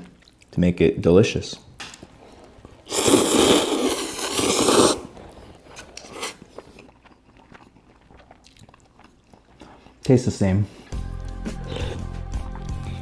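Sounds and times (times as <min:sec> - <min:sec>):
person slurping noodles: 0:02.8 - 0:07.0.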